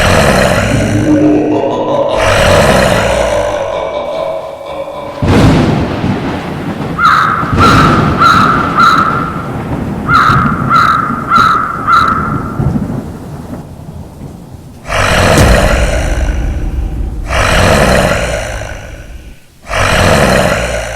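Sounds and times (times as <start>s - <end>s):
low rumble: 0.6s - 6.6s, 14.8s - 19.7s
thunder claps: 4.1s - 19.7s
crow cawing: 7.0s - 9.5s, 10.1s - 12.6s.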